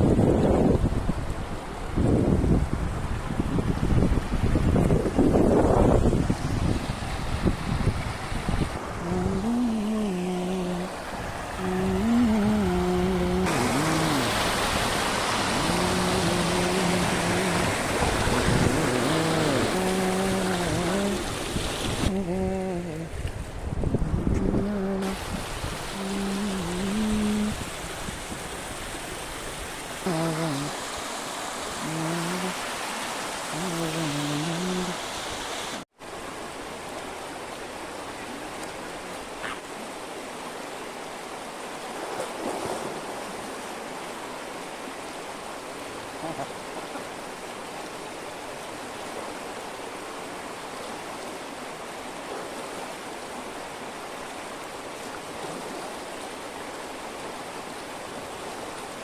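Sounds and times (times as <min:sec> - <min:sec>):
waterfall rushing over rocks: 0:04.5 - 0:59.0
person speaking: 0:09.0 - 0:11.0, 0:11.6 - 0:14.4, 0:15.5 - 0:21.3, 0:22.1 - 0:23.2, 0:24.4 - 0:25.2, 0:25.9 - 0:27.6, 0:30.0 - 0:30.8, 0:31.8 - 0:32.6, 0:33.5 - 0:35.0, 0:46.2 - 0:46.9.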